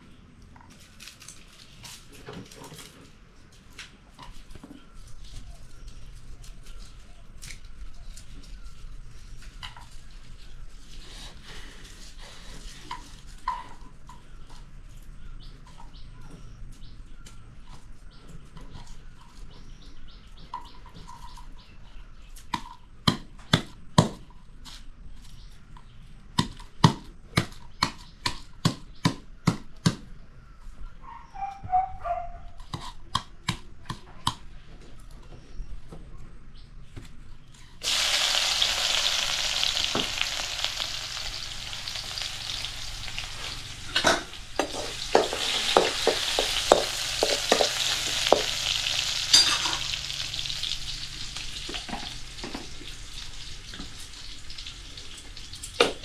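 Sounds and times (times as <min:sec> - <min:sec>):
food sizzling in hot oil: 0:37.8 - 0:56.0
utensil knocking against pan: 0:43.9 - 0:48.7.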